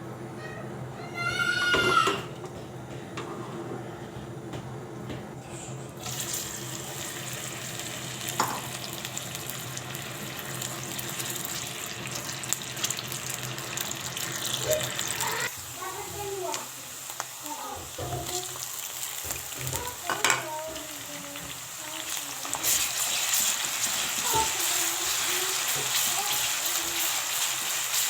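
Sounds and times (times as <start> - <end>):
water running from a tap: 6.0 - 28.0.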